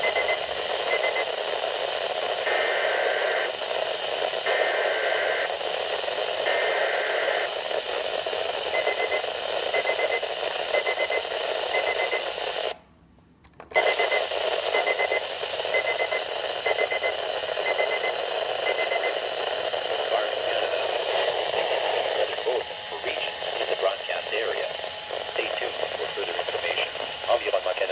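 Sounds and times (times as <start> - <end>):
radio static hiss: 0.0 - 12.8, 13.8 - 27.9.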